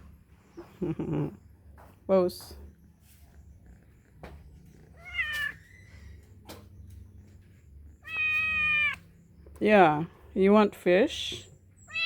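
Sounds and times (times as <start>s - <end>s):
cat meowing: 5.0s - 5.8s, 8.0s - 9.0s.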